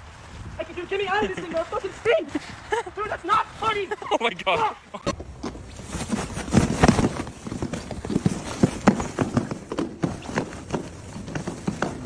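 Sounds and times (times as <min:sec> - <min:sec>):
rapid knocks and scuffs: 0:00.0 - 0:12.0.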